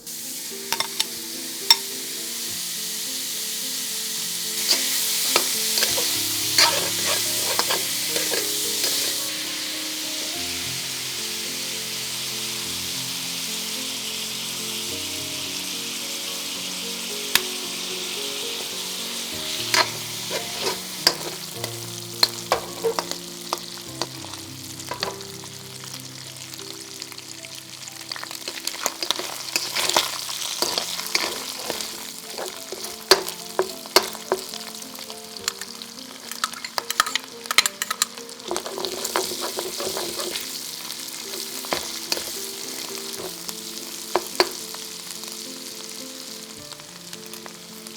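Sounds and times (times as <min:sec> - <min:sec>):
food sizzling in a pan: 0:00.0 - 0:47.9
utensil scraping a pan: 0:04.6 - 0:09.3, 0:19.3 - 0:25.3, 0:28.5 - 0:34.6, 0:35.4 - 0:43.5, 0:44.1 - 0:44.7.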